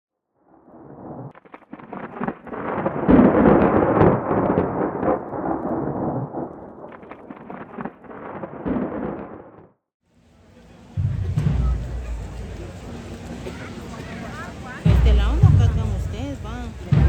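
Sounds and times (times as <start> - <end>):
heavy rain drumming: 10.2 - 17.0.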